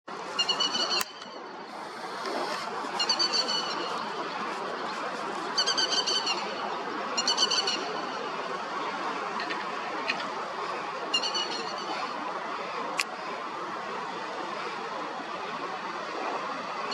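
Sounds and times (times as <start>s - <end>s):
steady background hiss: 0.1s - 16.9s
lapwing calling sharp notes: 3.0s - 4.0s, 11.1s - 11.9s.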